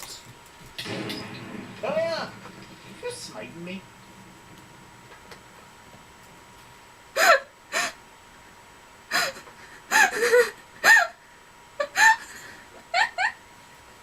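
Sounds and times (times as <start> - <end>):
breathless wheezing laughter: 9.1 - 11.2, 11.8 - 13.4.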